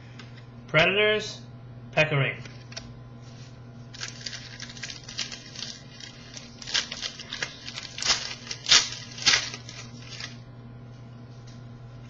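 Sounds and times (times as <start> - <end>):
faint steady hum: 0.0 - 12.0
trading cards sliding and rustling: 2.5 - 10.4.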